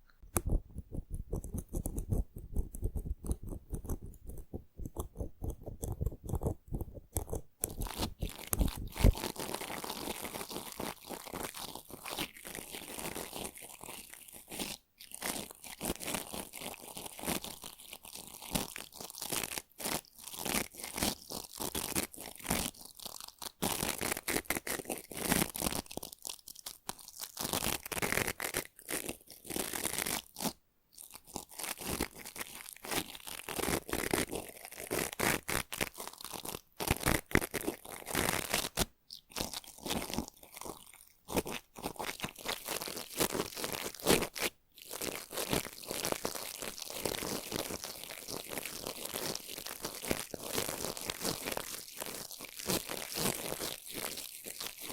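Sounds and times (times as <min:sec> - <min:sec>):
stiff brush bristles stroked: 0:00.4 - 0:10.0.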